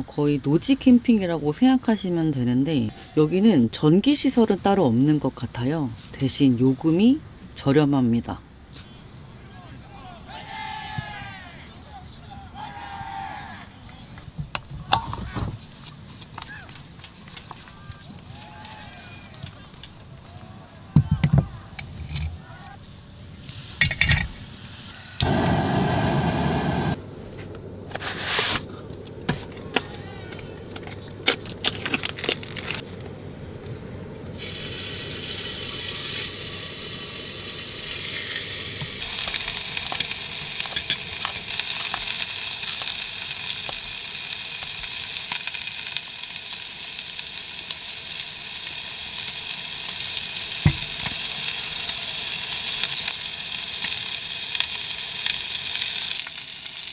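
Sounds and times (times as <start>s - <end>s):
meat sizzling in a pan: 15.8s - 19.3s, 34.3s - 56.9s
loud rushing noise: 25.0s - 27.2s
cooking gear clicks and knocks: 28.9s - 33.1s, 38.8s - 43.0s.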